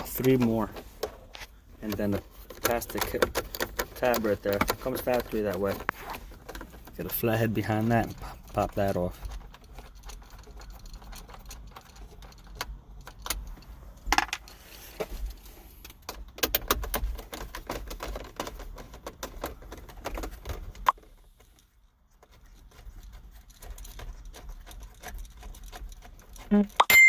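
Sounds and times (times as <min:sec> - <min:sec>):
plastic trim being pried loose: 0:00.0 - 0:07.0
hand tools clicking and tapping: 0:00.0 - 0:14.4.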